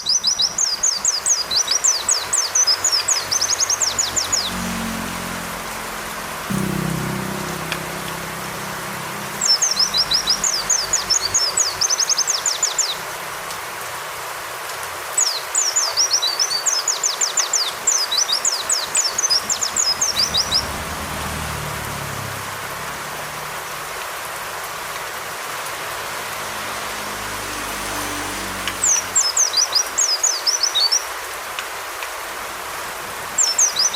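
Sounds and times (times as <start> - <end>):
bird twittering song: 0.0 - 4.6, 9.4 - 13.0, 15.2 - 20.7
rain: 0.0 - 33.9.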